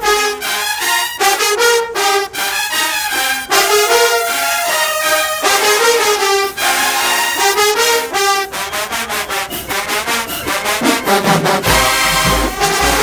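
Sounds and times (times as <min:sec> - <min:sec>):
loud brass chords: 0:00.0 - 0:13.0
heavy low drums: 0:09.5 - 0:13.0
sharp drum hits: 0:09.5 - 0:13.0.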